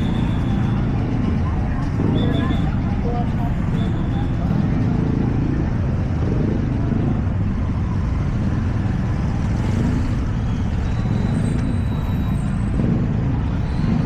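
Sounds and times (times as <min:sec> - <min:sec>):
street noise with low rumble: 0:00.0 - 0:14.0.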